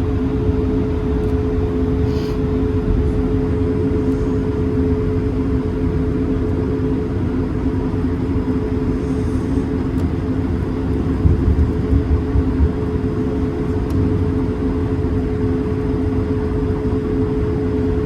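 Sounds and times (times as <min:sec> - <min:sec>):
aircraft cabin rumble: 0:00.0 - 0:18.0
steady hums: 0:00.0 - 0:18.0.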